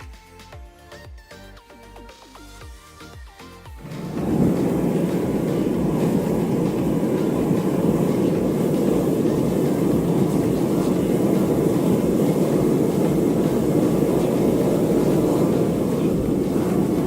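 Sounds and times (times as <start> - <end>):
furnace burner rushing: 3.8 - 17.0.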